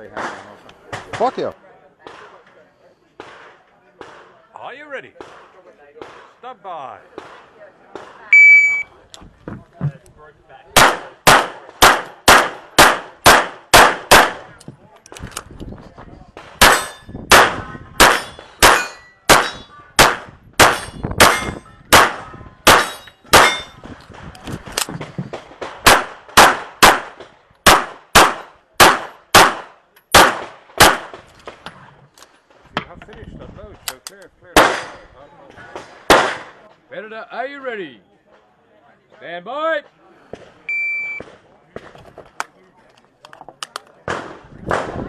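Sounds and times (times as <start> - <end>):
rapid handgun shots: 5.2 - 6.4, 10.8 - 14.6, 16.4 - 24.3, 25.3 - 31.3, 34.6 - 35.0, 35.8 - 36.6.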